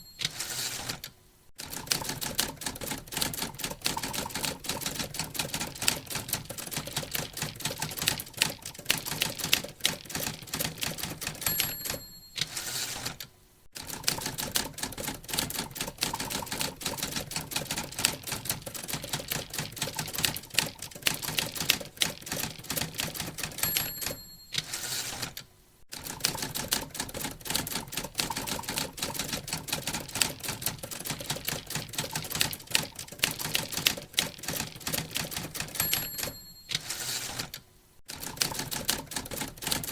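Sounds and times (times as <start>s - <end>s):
typewriter margin bell ding: 0.0s - 1.0s, 11.2s - 13.2s, 23.4s - 25.3s, 35.6s - 37.5s
typewriter keys clacking: 0.0s - 25.4s, 26.0s - 39.9s
typewriter carriage return: 0.0s - 39.9s.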